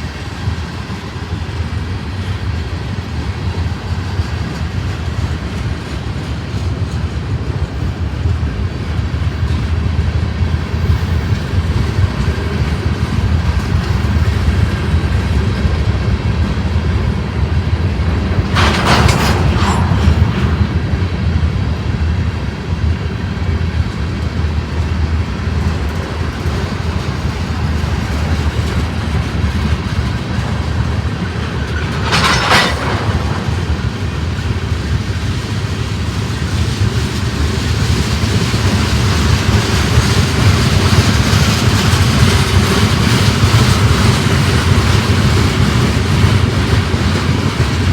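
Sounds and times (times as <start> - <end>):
clickety-clack of train cars: 0.0 - 47.9
freight train rumbling on rails: 0.0 - 47.9.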